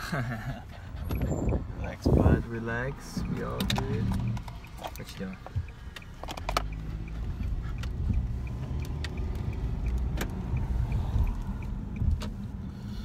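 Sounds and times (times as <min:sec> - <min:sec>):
car road rumble inside cabin: 0:00.0 - 0:13.0
sharp clicks: 0:03.2 - 0:12.4.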